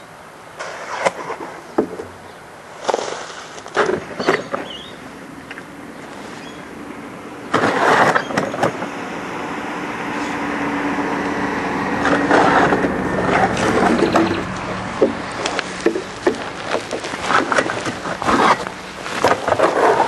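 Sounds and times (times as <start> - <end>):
engine running: 3.8 - 20.0
scraping noise: 12.0 - 14.6.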